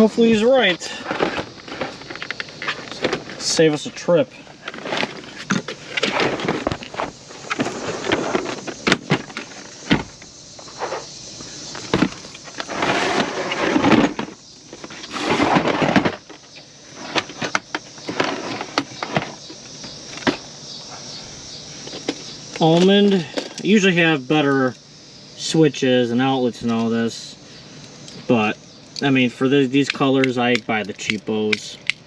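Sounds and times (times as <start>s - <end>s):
small parts clattering: 0.0s - 11.0s, 11.7s - 20.4s, 29.8s - 32.0s
scraping: 0.0s - 21.2s.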